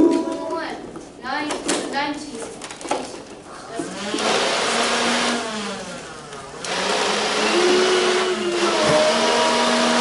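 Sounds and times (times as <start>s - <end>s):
blaster flywheel motors whirring: 4.9s - 10.0s.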